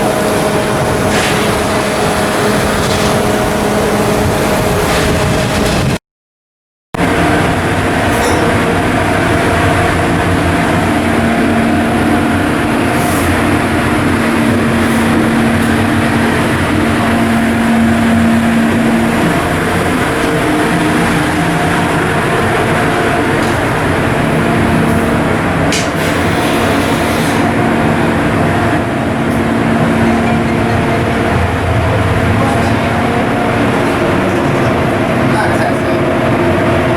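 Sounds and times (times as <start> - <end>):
ship diesel engine droning: 0.0 - 6.0, 7.0 - 36.9.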